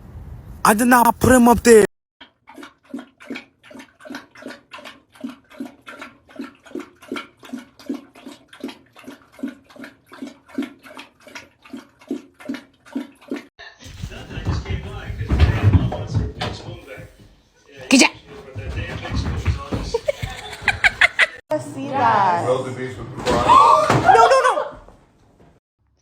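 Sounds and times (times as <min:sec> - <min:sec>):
dog lapping water: 0:02.2 - 0:16.9.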